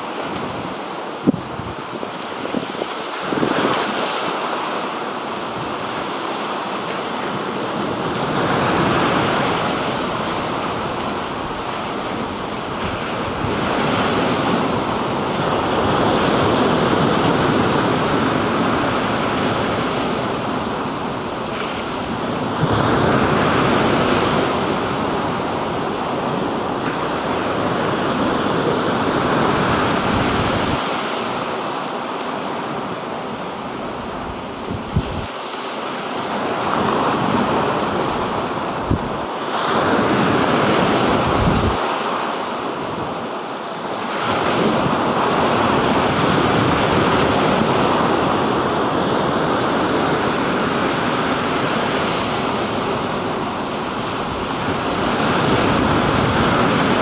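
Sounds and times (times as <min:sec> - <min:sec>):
sea waves breaking on shore: 0:00.0 - 0:57.0
wind on microphone: 0:00.2 - 0:04.4, 0:07.1 - 0:31.5, 0:33.8 - 0:35.4, 0:36.3 - 0:42.1.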